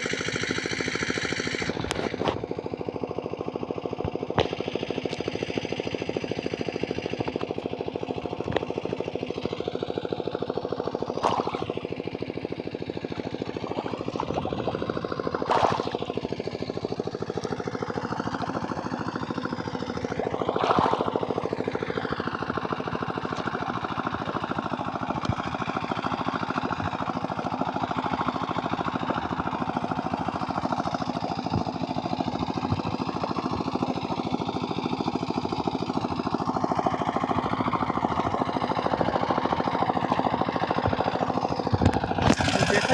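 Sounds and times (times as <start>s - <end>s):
rapid mechanical rattle: 0.0s - 42.9s
loud noisy bursts: 42.3s - 42.9s.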